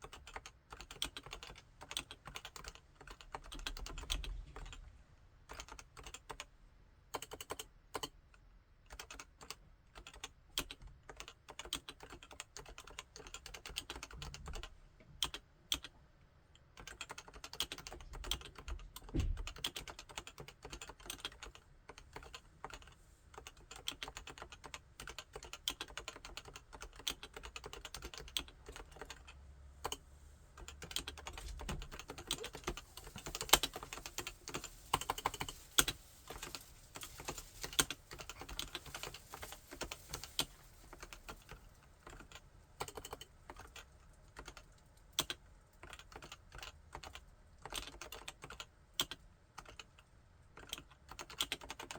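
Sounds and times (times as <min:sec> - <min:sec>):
keyboard typing: 0:00.0 - 0:04.8, 0:05.5 - 0:06.5, 0:07.1 - 0:08.2, 0:08.9 - 0:15.9, 0:16.8 - 0:30.0, 0:30.6 - 0:50.0, 0:50.6 - 0:51.9.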